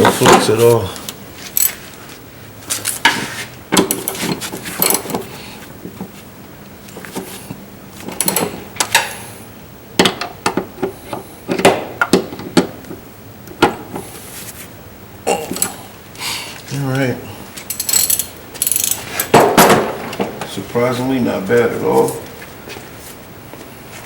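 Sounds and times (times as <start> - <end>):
hand tools and metal clinking: 0.0 - 1.9, 2.7 - 5.3, 15.4 - 15.8, 17.6 - 20.5.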